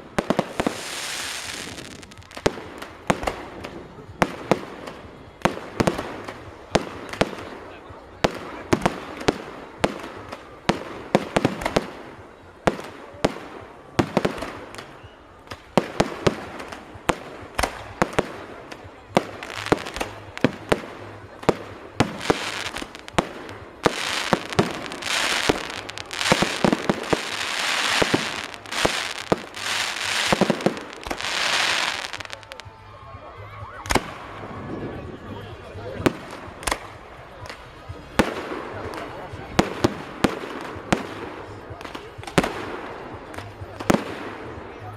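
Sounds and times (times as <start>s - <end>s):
fireworks bangs: 0.0s - 32.7s
fireworks crackling: 0.0s - 32.8s.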